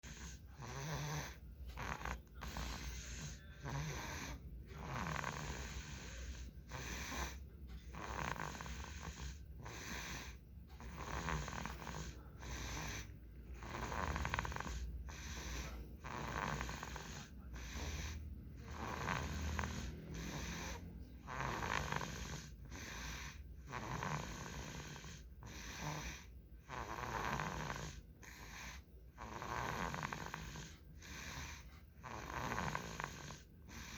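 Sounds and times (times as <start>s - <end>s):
child snoring: 0.0s - 33.9s.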